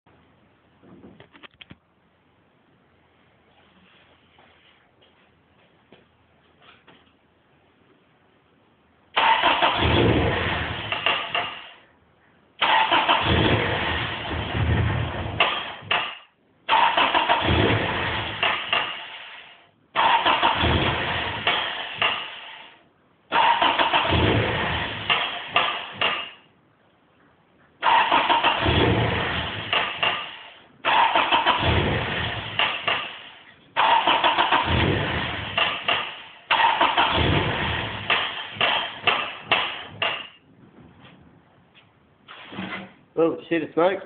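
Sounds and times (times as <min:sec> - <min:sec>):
starter motor cranking engine: 0:09.2 - 0:11.7, 0:12.6 - 0:15.8, 0:16.7 - 0:19.4, 0:20.0 - 0:22.6, 0:23.3 - 0:26.0, 0:27.8 - 0:40.0.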